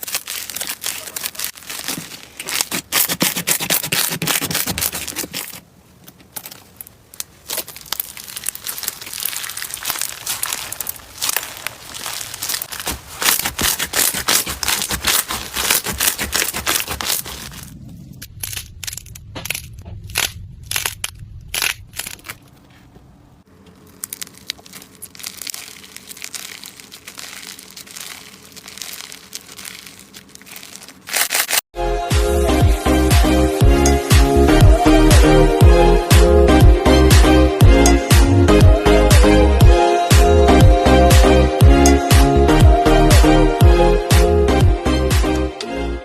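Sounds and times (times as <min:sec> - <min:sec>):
crunchy slime crackling: 0:00.0 - 0:22.7, 0:23.5 - 0:31.7
music: 0:31.8 - 0:46.0.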